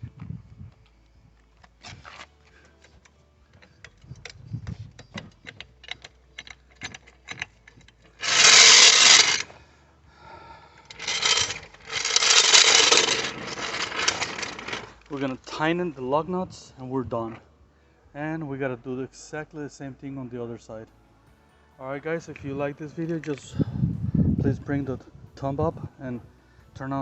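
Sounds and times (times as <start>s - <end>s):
rasping scraping noise: 8.1s - 9.5s, 10.9s - 15.1s.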